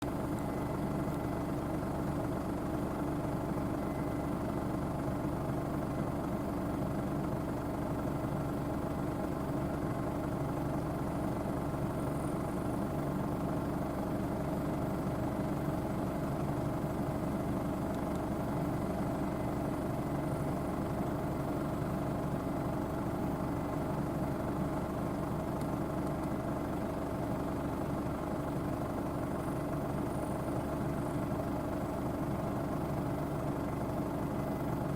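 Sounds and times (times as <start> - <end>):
combine harvester droning: 0.0 - 34.9.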